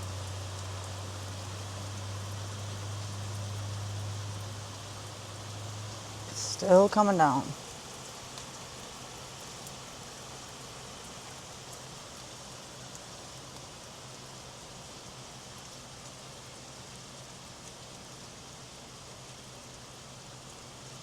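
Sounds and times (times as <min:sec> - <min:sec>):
steady rain falling: 0:00.0 - 0:21.0.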